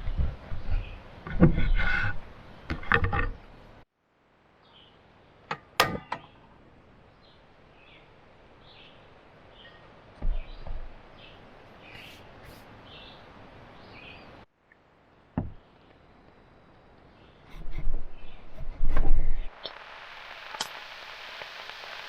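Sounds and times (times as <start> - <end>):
faint bird chirps: 4.6 - 5.5, 6.2 - 14.5, 15.5 - 19.8.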